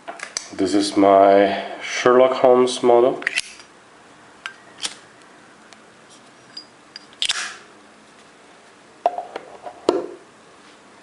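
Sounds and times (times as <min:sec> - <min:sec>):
metallic clinks: 0:06.4 - 0:07.2.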